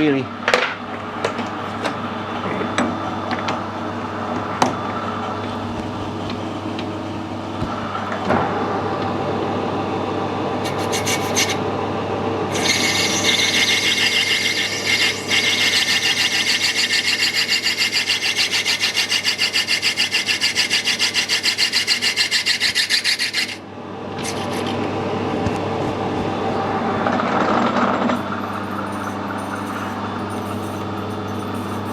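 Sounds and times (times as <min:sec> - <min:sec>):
metal lathe humming: 0:02.0 - 0:31.9
lathe cutting rasp: 0:10.6 - 0:11.6, 0:12.5 - 0:23.6.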